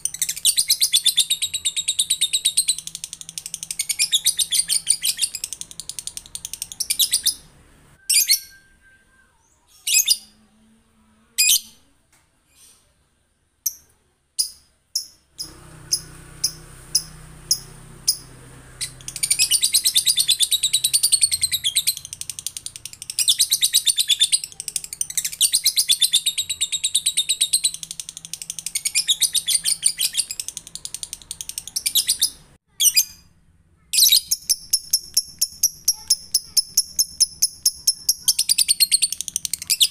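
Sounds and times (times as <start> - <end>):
lovebird chattering trill: 14.4 - 33.2, 34.0 - 39.9.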